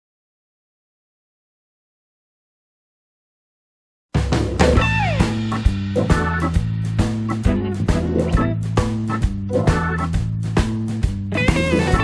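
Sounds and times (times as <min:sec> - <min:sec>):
background music with guitar and drums: 0:04.2 - 0:12.0.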